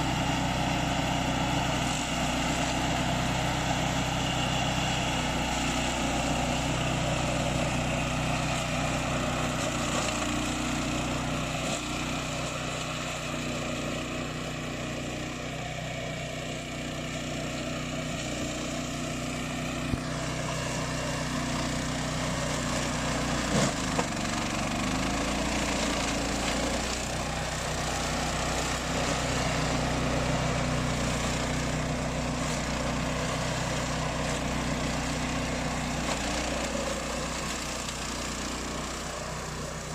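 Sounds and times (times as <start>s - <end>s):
mower engine running: 0.0s - 39.9s.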